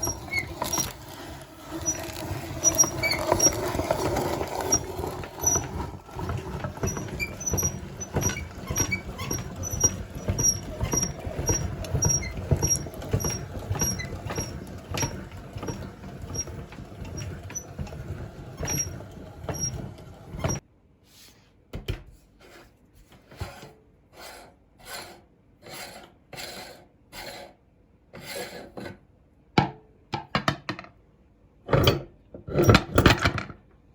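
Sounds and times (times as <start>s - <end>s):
meat grinder grinding: 0.0s - 20.6s.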